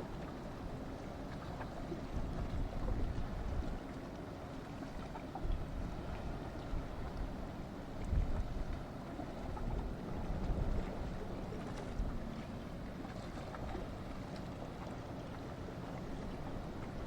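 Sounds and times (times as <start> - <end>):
boat engine running: 0.0 - 17.0
wind on microphone: 2.1 - 3.8, 8.0 - 8.8.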